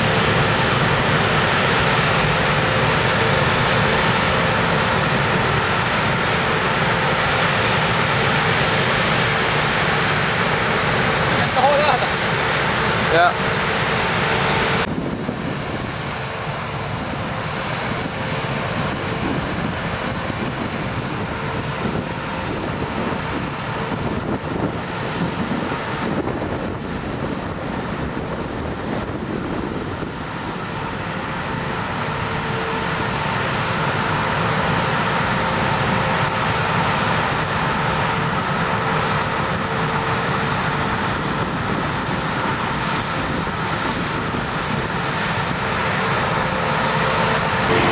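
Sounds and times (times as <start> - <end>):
farm machinery drone: 0.0 - 47.9
wind on microphone: 14.5 - 31.8.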